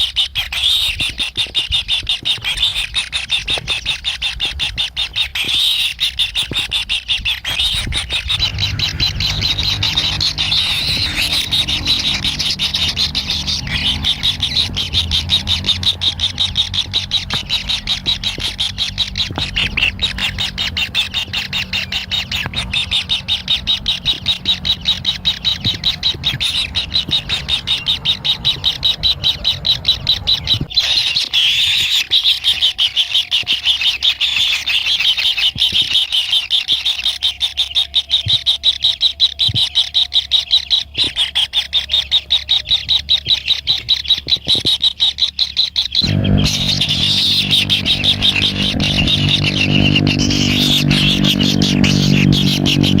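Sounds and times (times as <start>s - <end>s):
bird chicks begging calls: 0.0s - 53.0s
low background rumble: 1.8s - 30.8s, 45.9s - 53.0s.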